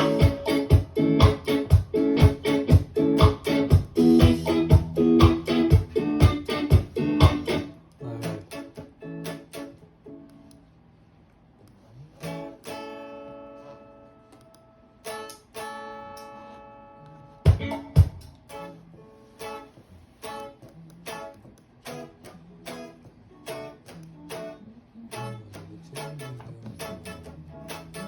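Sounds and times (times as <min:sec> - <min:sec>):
band playing guitar and drums: 0:00.0 - 0:07.7, 0:17.4 - 0:18.7, 0:26.0 - 0:28.0
guitar chords strummed: 0:00.0 - 0:10.6, 0:12.2 - 0:28.0.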